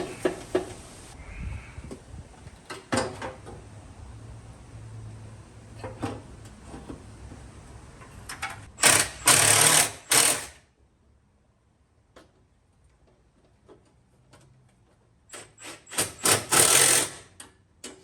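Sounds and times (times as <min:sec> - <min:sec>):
air impact wrench bursts: 0:08.8 - 0:10.6, 0:15.4 - 0:17.3.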